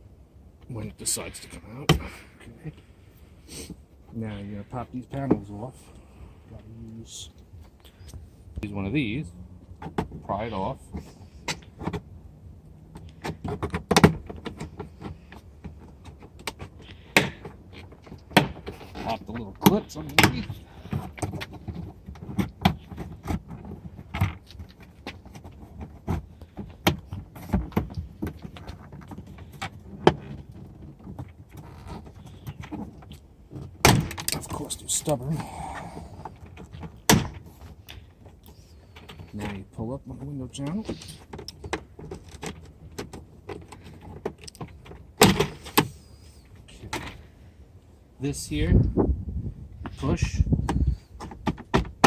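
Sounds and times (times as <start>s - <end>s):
clicks and rattles of plastic parts: 40.6s - 46.0s.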